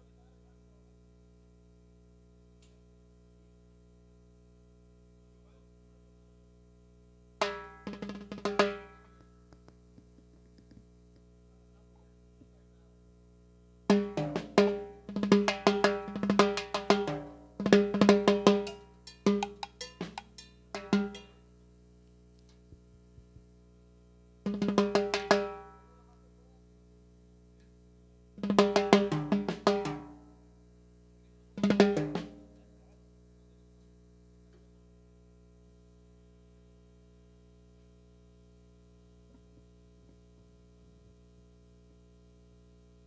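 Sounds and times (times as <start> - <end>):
faint steady hum: 0.0 - 43.0
drum fills on snare and toms: 7.4 - 9.4, 13.9 - 21.4, 24.5 - 25.8, 28.4 - 30.2, 31.6 - 32.6.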